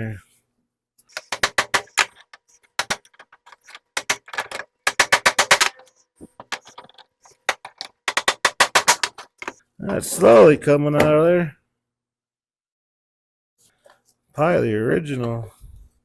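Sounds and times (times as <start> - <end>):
sharp clicks of hand tools: 1.1 - 9.6.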